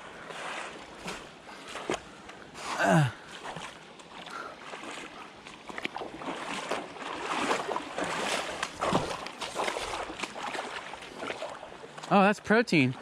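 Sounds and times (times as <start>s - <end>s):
creek water rushing: 0.0s - 13.0s.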